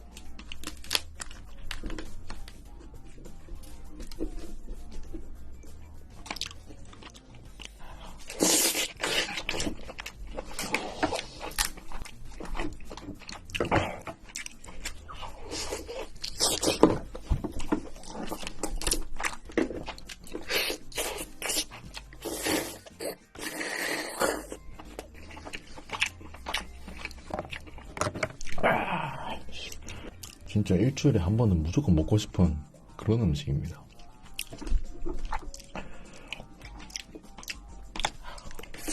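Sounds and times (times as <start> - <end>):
crab shell cracking: 0.0 - 2.5
chewing and slurping: 0.0 - 28.7, 33.8 - 38.9.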